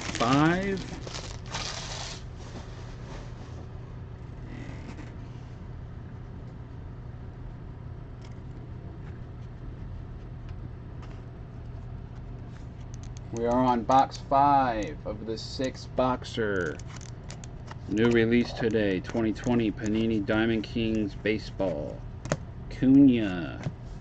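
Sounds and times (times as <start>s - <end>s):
cardboard packaging rustling: 0.0s - 3.0s
low electrical hum: 0.0s - 24.0s.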